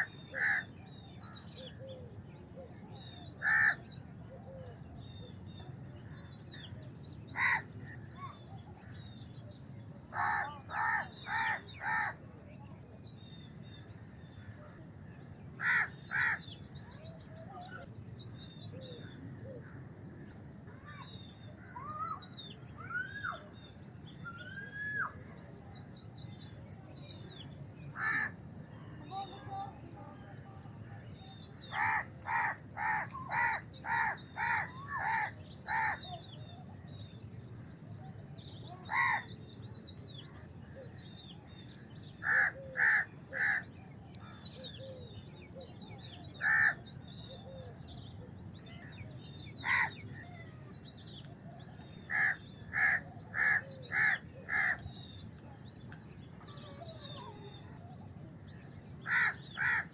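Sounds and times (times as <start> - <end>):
crows cawing: 0.0 - 0.7, 3.4 - 3.8, 7.4 - 7.7, 10.2 - 12.2, 15.6 - 16.5, 28.0 - 28.4, 31.7 - 36.1, 38.9 - 39.3, 42.2 - 43.7, 46.4 - 46.8, 49.6 - 50.0, 52.1 - 54.8, 59.0 - 59.9
small birds chirping: 0.0 - 59.9.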